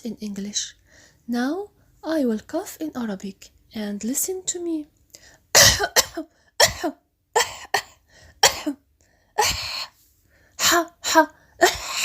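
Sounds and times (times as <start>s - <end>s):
person coughing: 5.6s - 8.8s, 9.4s - 10.0s, 10.6s - 12.0s.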